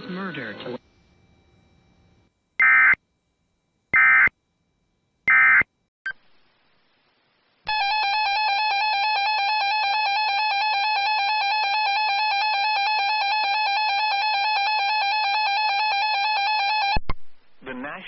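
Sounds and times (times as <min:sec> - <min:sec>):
shrill two-tone alarm: 0:02.6 - 0:03.0, 0:03.9 - 0:04.3, 0:05.3 - 0:05.7, 0:07.7 - 0:17.0.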